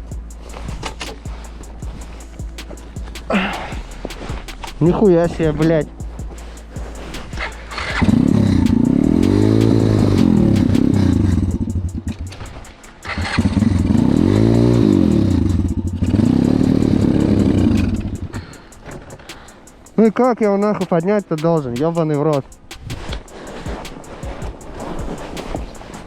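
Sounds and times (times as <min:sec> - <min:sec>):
motorbike engine revving: 0:06.8 - 0:19.3.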